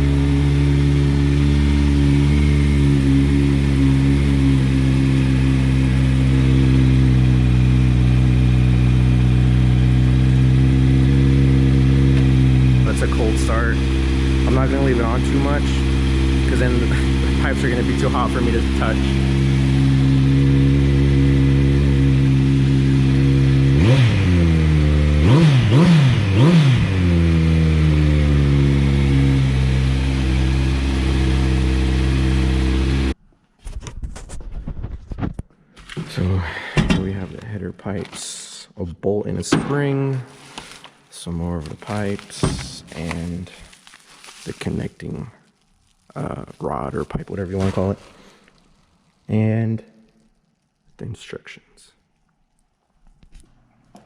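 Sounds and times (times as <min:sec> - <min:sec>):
motorcycle engine idling: 0:00.0 - 0:33.1
engine throttle blips: 0:00.0 - 0:33.2.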